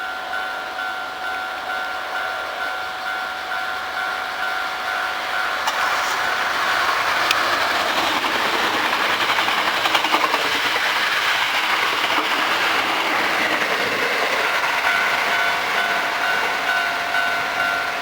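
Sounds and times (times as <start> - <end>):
crossing warning bell: 0.0 - 18.0
train wheels clattering: 3.9 - 18.0.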